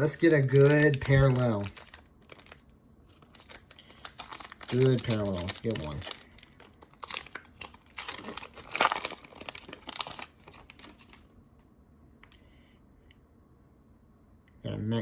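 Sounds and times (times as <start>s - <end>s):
plastic wrapper tearing and crinkling: 0.0s - 11.2s.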